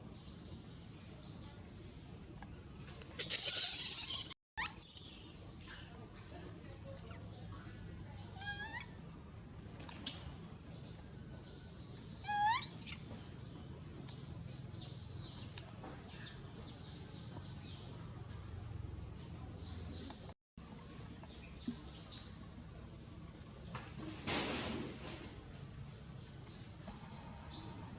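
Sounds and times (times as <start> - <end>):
baby monkey high-pitched call: 3.3 - 6.0, 8.3 - 9.0, 12.2 - 12.9.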